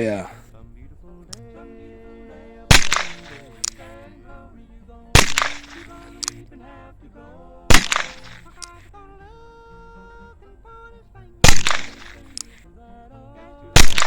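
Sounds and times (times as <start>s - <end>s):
revolver hammer cocking click: 2.7s - 3.8s, 5.2s - 6.4s, 7.7s - 8.7s, 11.5s - 12.5s
revolver shots: 2.7s - 3.8s, 5.2s - 6.4s, 7.7s - 8.7s, 11.4s - 12.5s, 13.8s - 14.0s.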